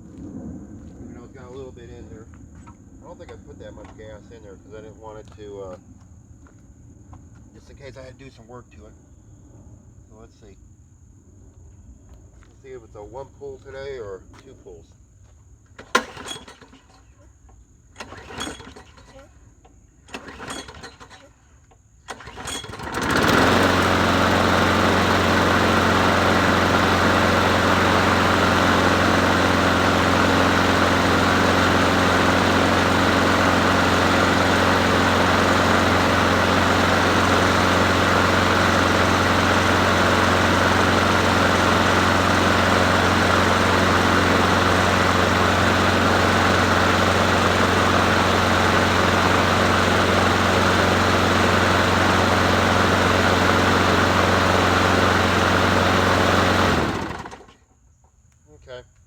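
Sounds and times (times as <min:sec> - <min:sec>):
lawn mower engine running: 0:15.8 - 0:17.1, 0:17.9 - 0:19.3, 0:20.0 - 0:21.4, 0:22.0 - 0:57.6
rope pull starter: 0:15.8 - 0:17.2, 0:17.9 - 0:19.3, 0:20.0 - 0:21.4, 0:22.0 - 0:57.6.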